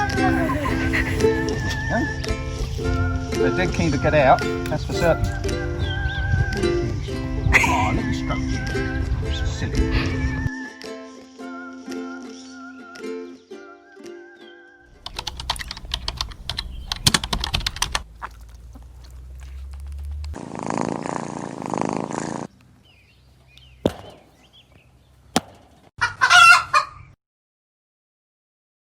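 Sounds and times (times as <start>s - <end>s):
ukulele music: 0.0s - 17.8s
chicken call: 26.0s - 27.0s.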